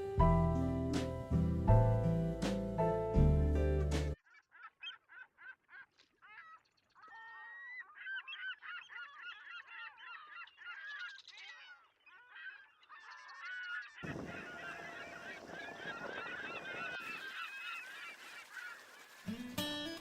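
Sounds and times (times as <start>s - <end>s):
geese honking: 12.3s - 19.5s.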